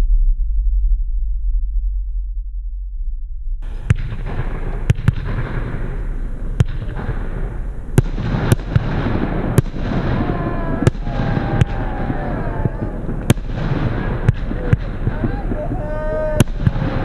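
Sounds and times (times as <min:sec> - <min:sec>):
low hum: 0:00.0 - 0:17.0
fireworks crackling hiss: 0:03.6 - 0:17.0
fireworks shots and reports: 0:03.6 - 0:17.0.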